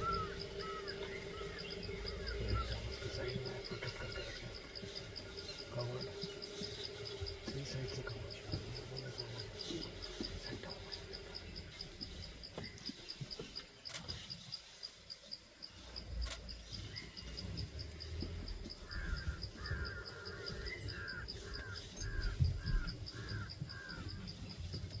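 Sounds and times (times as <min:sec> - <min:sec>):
bird calling repeated notes: 0:00.0 - 0:13.8, 0:16.5 - 0:24.7
insect chirping: 0:00.0 - 0:25.0.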